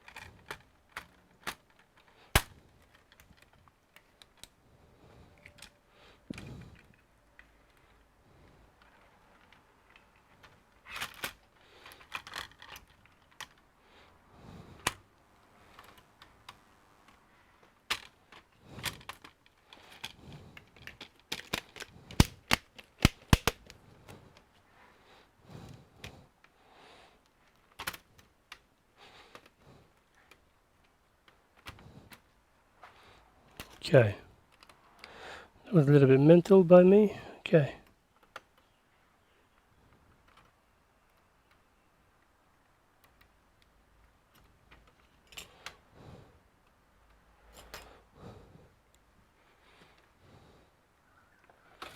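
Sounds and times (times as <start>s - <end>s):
hands clicking on a laptop: 19.8s - 23.8s.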